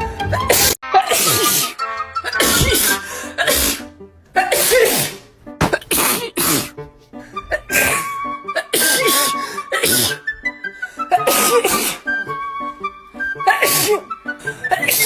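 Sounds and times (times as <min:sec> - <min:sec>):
background music: 0:00.0 - 0:15.0
person sneezing: 0:04.4 - 0:06.8, 0:08.7 - 0:10.2, 0:11.1 - 0:12.1, 0:13.5 - 0:14.1.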